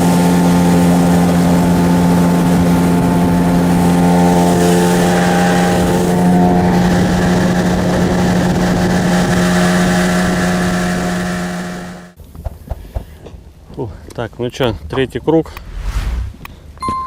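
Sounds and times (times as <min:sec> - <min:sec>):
outboard motor running: 0:00.0 - 0:12.2.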